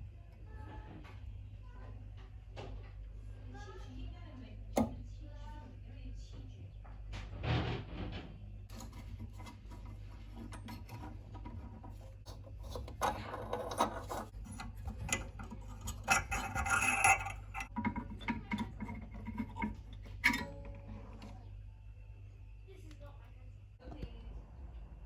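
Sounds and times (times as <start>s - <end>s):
gas boiler humming: 0.0s - 25.0s
scratching and rubbing: 8.7s - 21.4s.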